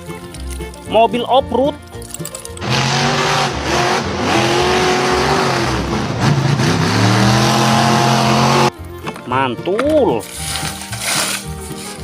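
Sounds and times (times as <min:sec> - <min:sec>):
car engine revving: 0:02.6 - 0:08.7.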